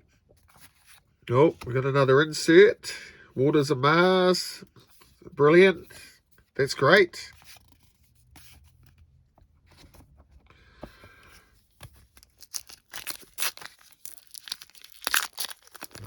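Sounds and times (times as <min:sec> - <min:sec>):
foil wrapper tearing and crinkling: 0:12.2 - 0:16.0.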